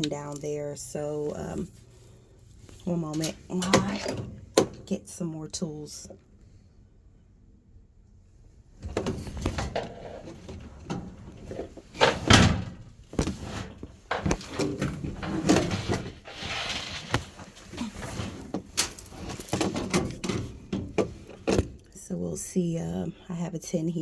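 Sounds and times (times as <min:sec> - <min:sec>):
hand tools clattering: 0:13.2 - 0:21.5.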